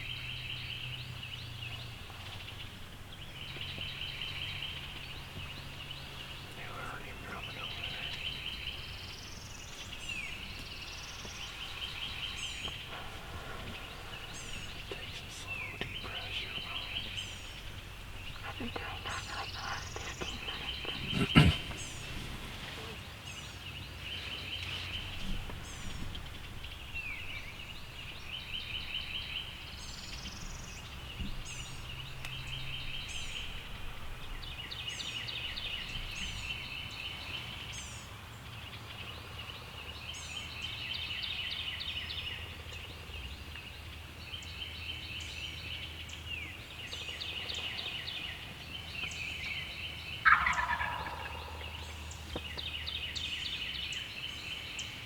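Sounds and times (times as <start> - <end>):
high falling bird calls: 3.5 - 55.0
turkeys gobbling: 18.4 - 22.1, 50.2 - 52.1.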